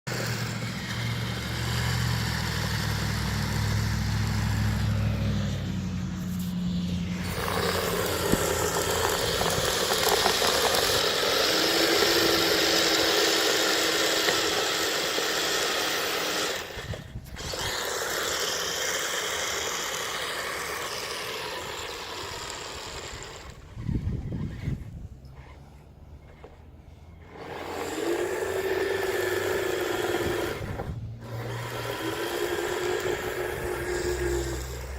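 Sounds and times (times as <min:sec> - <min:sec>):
low engine-like hum: 0:00.1 - 0:12.8, 0:16.6 - 0:34.9
tracks and blade rushing through snow: 0:00.1 - 0:14.8, 0:15.5 - 0:25.6
electric motor whining: 0:00.1 - 0:34.9.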